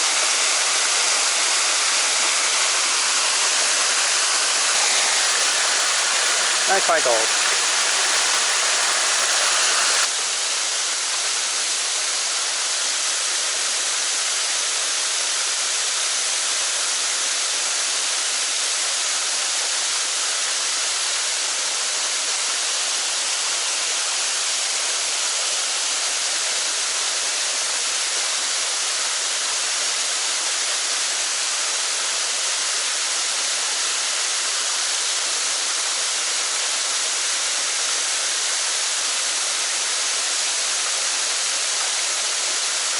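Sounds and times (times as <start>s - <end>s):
stream water rushing: 0.0s - 10.6s, 32.5s - 42.9s.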